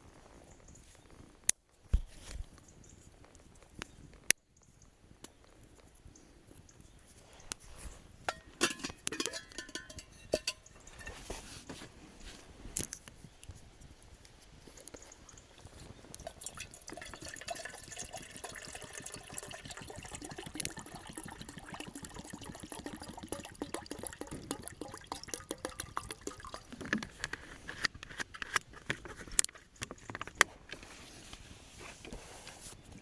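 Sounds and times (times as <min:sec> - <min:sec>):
water pouring into container: 0:14.9 - 0:27.4.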